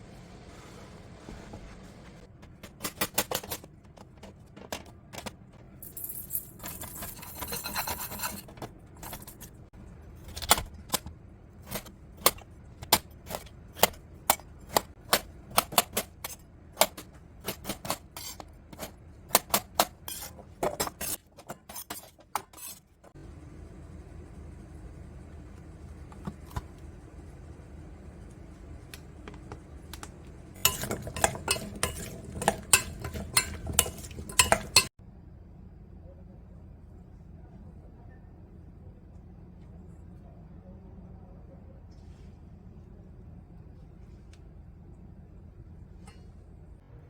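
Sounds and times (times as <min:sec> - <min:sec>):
kitchenware clinking: 0:02.6 - 0:09.6, 0:30.6 - 0:34.9.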